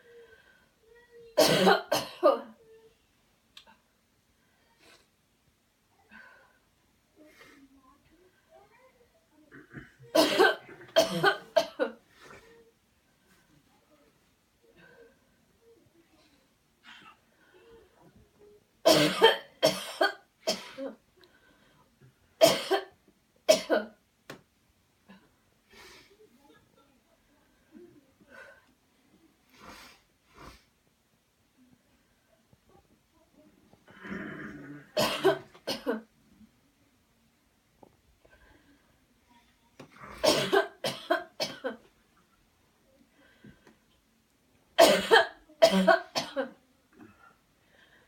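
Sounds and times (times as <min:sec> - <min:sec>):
person coughing: 0:01.4 - 0:02.5, 0:09.5 - 0:12.0, 0:18.9 - 0:21.0, 0:22.4 - 0:22.9, 0:34.0 - 0:36.0, 0:40.1 - 0:41.8, 0:44.8 - 0:46.6.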